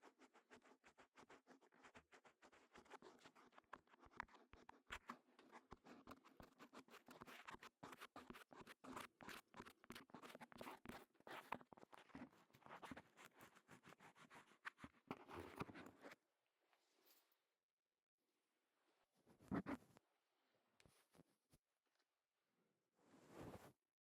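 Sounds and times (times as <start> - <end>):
crackling and scratching at microphone: 0.2 - 16.2, 19.2 - 20.0, 23.1 - 23.8.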